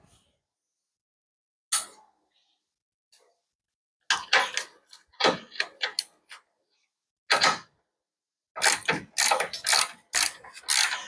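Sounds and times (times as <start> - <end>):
ratchet wrench clicking: 8.6 - 11.0.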